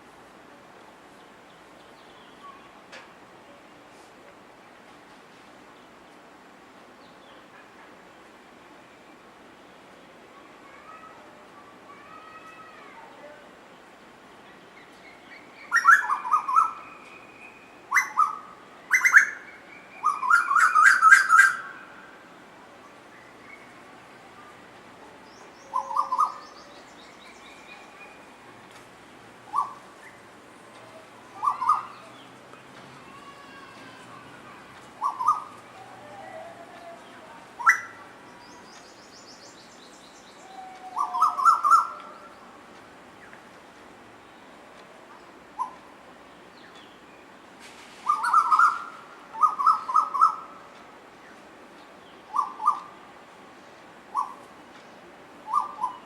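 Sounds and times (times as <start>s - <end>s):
koel calling: 35.0s - 35.6s, 40.6s - 42.0s, 52.3s - 52.9s, 54.1s - 54.4s.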